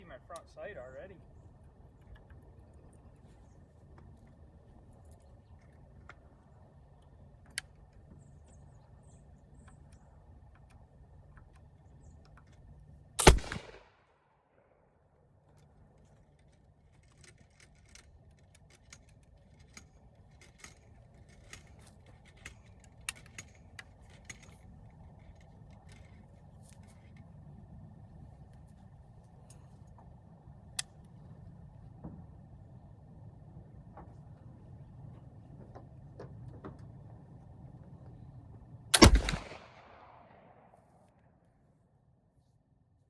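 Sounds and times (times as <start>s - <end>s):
rifle shot: 13.2s - 14.1s, 38.9s - 40.8s.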